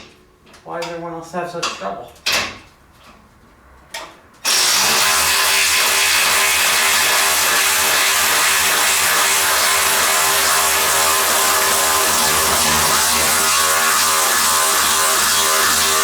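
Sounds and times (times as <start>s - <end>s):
power tool running: 4.4s - 16.0s.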